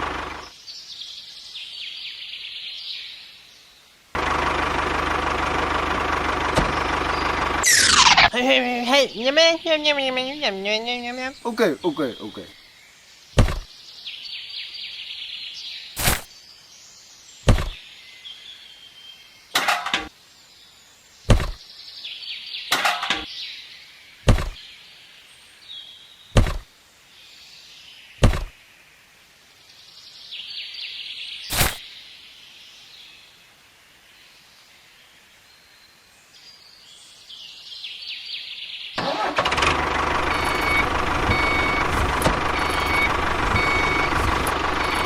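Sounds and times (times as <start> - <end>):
sharp knocks: 13.4 - 13.7, 17.5 - 17.8, 21.3 - 21.6, 24.3 - 24.6, 26.4 - 26.7, 28.2 - 28.5.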